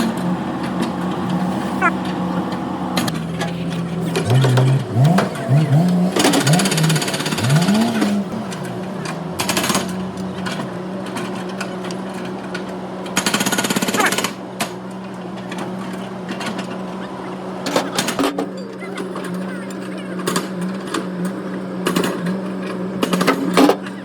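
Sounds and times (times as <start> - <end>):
power tool rattling: 0.0 - 16.8.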